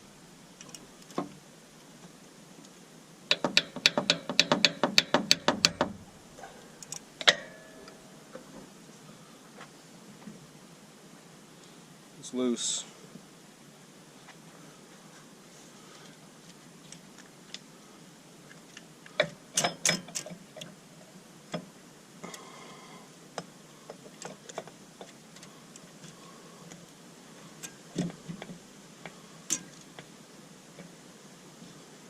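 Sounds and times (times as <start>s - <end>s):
metal tools clanking on metal: 6.8s - 8.0s, 19.2s - 20.4s, 29.5s - 29.8s.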